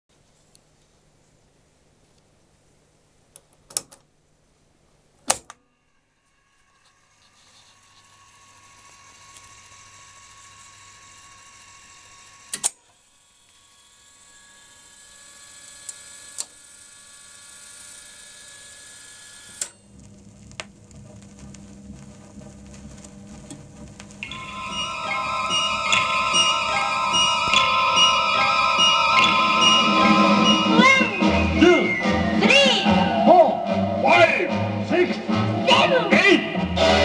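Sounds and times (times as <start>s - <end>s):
sharp mechanical clunks: 5.2s - 5.7s
record player motor hum: 6.4s - 14.7s, 19.3s - 31.4s
music from a record: 20.0s - 37.0s.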